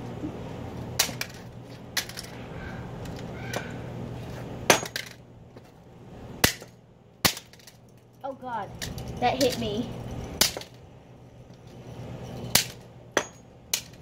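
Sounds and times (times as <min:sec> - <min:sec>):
steady low hum: 0:00.0 - 0:14.0
plastic housing cracking from blows: 0:06.4 - 0:07.8.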